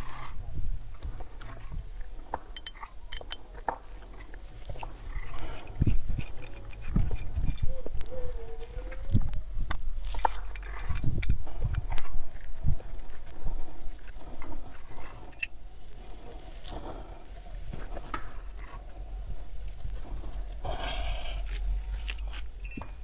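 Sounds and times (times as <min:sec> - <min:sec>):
light metallic clinks: 0:15.3 - 0:15.6, 0:22.1 - 0:23.0.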